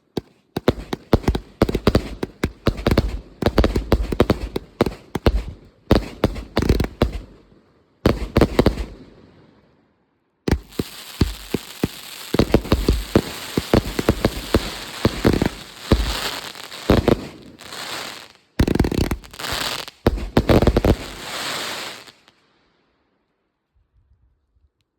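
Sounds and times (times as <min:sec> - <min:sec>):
fireworks popping: 0:00.0 - 0:07.5, 0:08.1 - 0:09.1, 0:10.5 - 0:22.3
fireworks hissing: 0:10.5 - 0:22.3.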